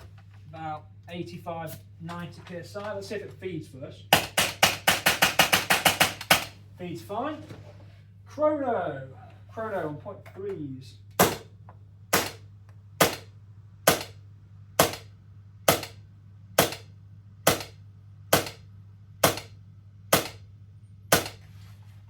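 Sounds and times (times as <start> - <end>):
airsoft rifle shots: 4.1 - 6.6, 11.2 - 11.5, 12.1 - 12.4, 13.0 - 13.3, 13.9 - 14.2, 14.8 - 15.1, 15.7 - 16.0, 16.6 - 16.9, 17.5 - 18.6, 19.2 - 20.4.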